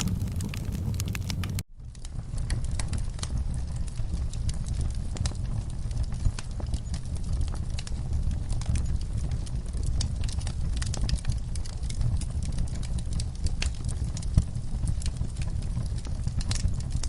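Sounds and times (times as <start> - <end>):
campfire crackling and popping: 0.0 - 17.0
low rumble of flames: 0.0 - 17.0.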